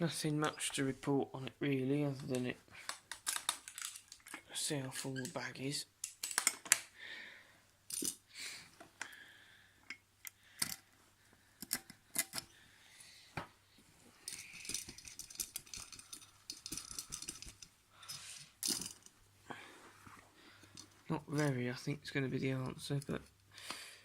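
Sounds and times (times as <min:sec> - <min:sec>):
clicks knocks and rattling: 0:14.3 - 0:17.7.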